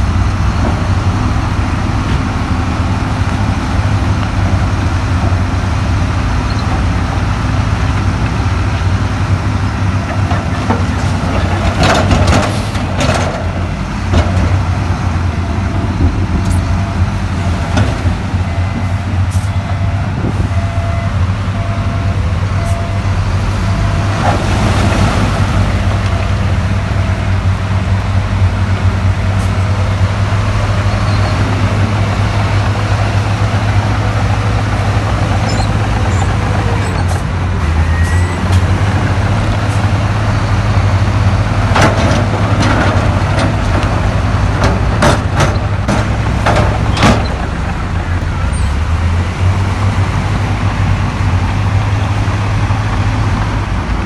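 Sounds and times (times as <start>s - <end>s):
diesel machinery engine drone: 0.0s - 54.0s
metallic clanks and knocks: 44.6s - 47.7s.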